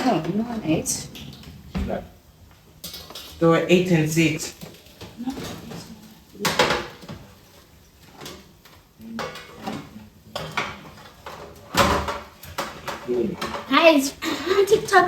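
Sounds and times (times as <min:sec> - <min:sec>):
light kitchen clatter: 0:00.0 - 0:15.0.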